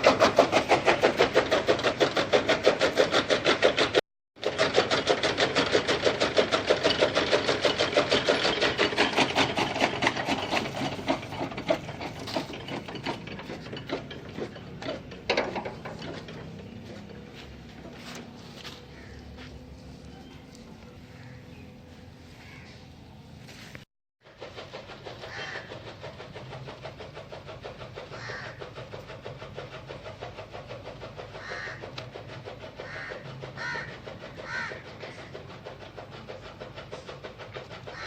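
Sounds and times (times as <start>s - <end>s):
chaff cutter blades chopping: 0.0s - 21.6s.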